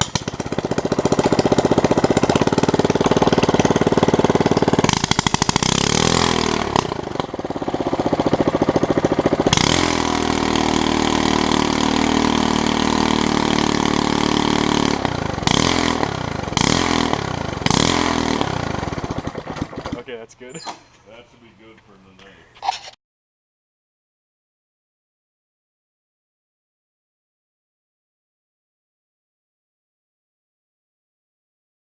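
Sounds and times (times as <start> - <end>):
lawn mower engine popping: 0.0 - 22.9.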